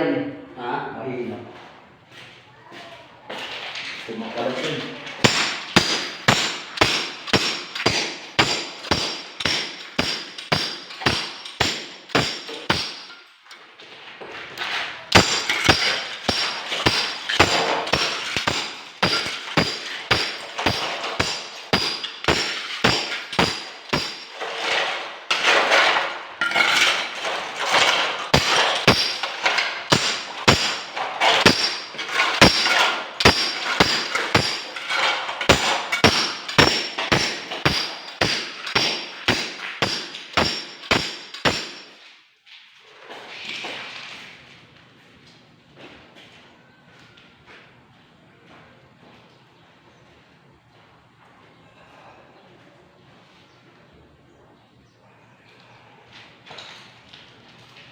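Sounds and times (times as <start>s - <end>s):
hammer striking metal: 5.2s - 13.3s, 15.1s - 42.1s.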